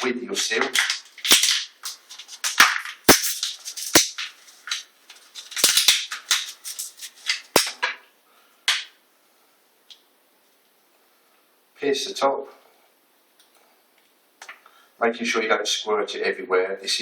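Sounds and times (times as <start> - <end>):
plastic packaging crinkling: 0.8 - 7.7.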